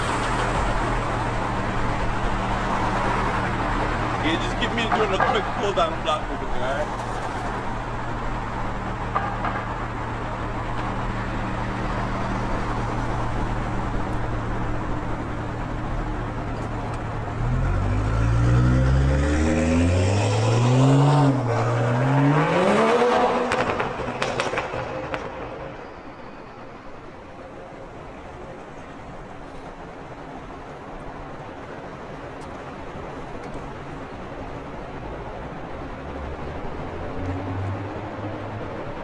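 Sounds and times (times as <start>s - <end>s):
car engine revving through upshifts: 17.3s - 24.8s.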